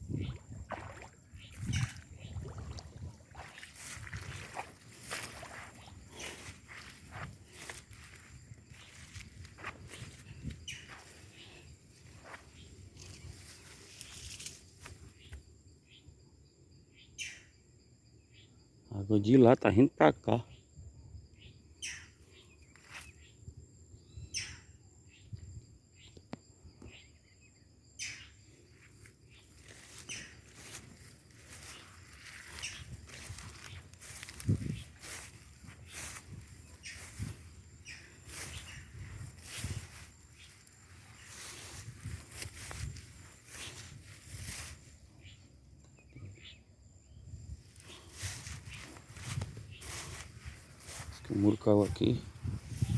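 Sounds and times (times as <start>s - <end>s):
insects droning: 0.0s - 52.9s
footsteps through leaf litter: 3.3s - 10.2s, 29.6s - 44.9s, 47.9s - 52.8s.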